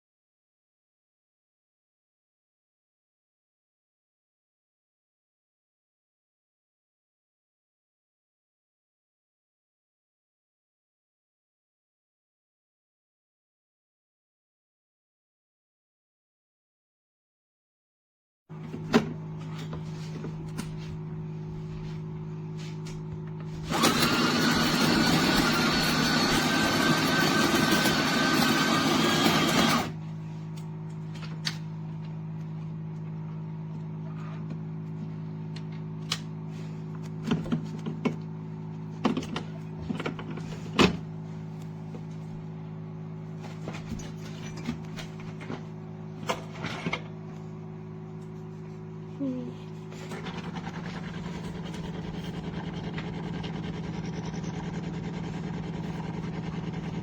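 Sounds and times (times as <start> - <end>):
espresso machine rushing: 23.6 - 30.0, 50.0 - 57.0
espresso machine humming: 23.7 - 30.0, 50.2 - 57.0.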